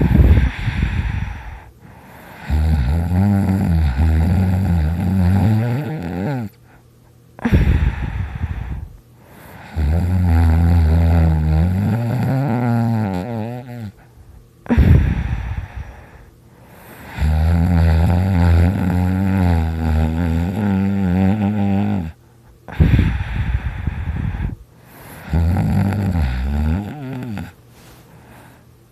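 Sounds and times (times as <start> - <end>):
person snoring loudly: 0.0 - 6.6, 7.4 - 14.0, 14.7 - 16.2, 16.8 - 27.6
breathy puff: 7.4 - 9.7, 14.7 - 17.2, 27.7 - 28.7.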